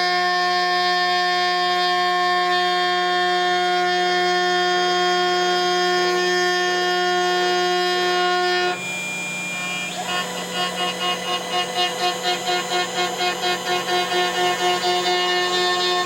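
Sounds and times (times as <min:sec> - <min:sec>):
cnc router spindle whine: 0:00.0 - 0:16.0.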